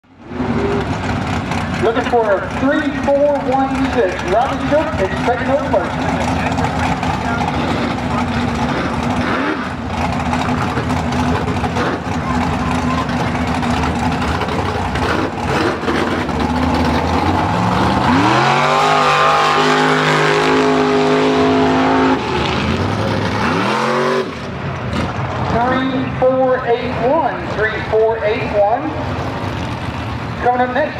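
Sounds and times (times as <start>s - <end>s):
truck engine revving: 0.0s - 30.9s.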